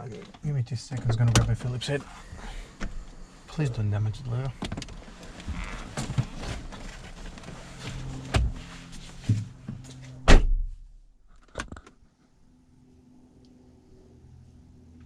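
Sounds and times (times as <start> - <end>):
heavy thump: 9.2 - 10.8.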